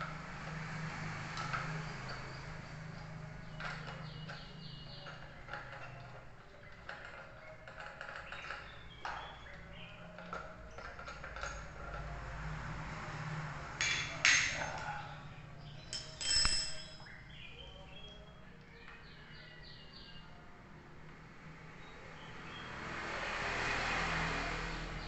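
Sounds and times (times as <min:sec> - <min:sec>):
metal tools clinking and clanking: 0:13.8 - 0:14.9, 0:15.8 - 0:17.1.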